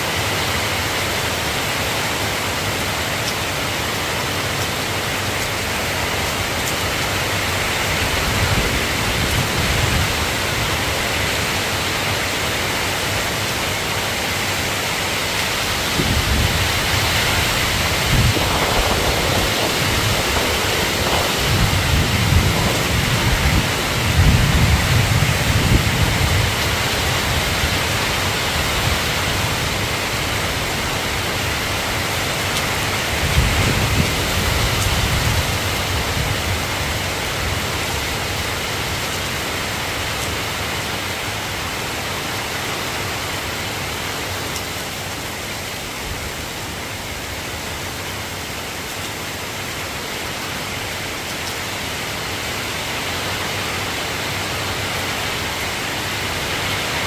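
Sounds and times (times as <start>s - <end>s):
steady rainfall hiss: 0.0s - 57.0s
low thunder rumbles: 14.9s - 38.6s.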